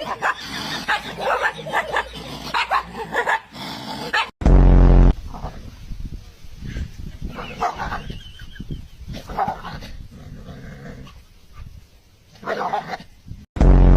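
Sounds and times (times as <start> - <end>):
dog growling and barking: 0.0 - 4.4, 9.2 - 11.2, 12.4 - 13.1.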